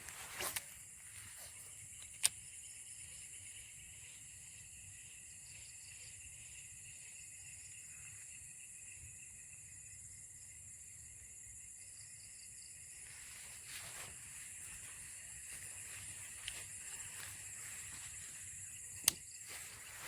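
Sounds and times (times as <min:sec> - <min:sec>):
insects chirping: 0:00.0 - 0:20.0
sharp click: 0:19.0 - 0:19.2.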